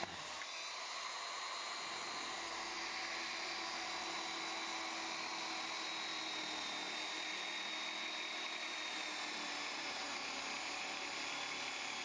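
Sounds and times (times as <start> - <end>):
electric motor whirring: 0.0 - 9.0.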